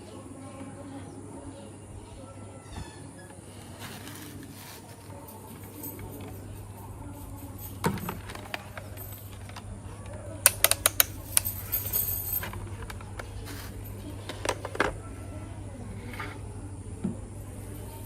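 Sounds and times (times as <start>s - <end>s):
metal parts clicking and clinking: 10.4s - 14.8s.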